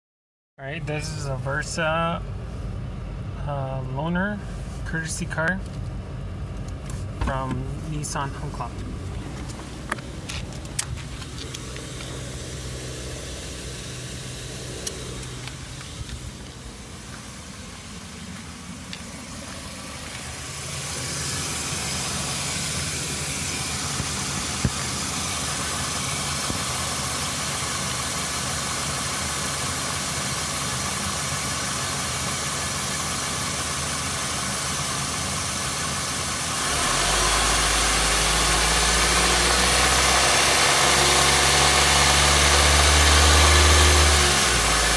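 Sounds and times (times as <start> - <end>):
four-cylinder engine running: 0.6 - 44.9.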